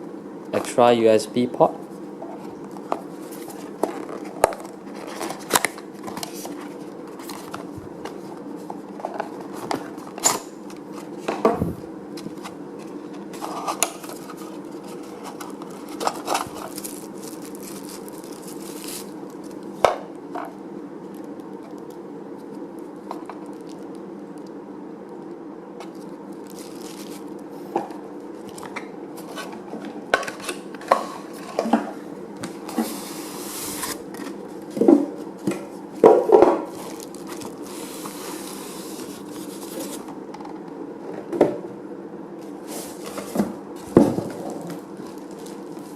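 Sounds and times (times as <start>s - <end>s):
steady low hum: 0.0s - 45.9s
packaging being handled: 2.6s - 19.8s, 25.8s - 27.6s, 36.6s - 40.1s, 42.7s - 45.9s.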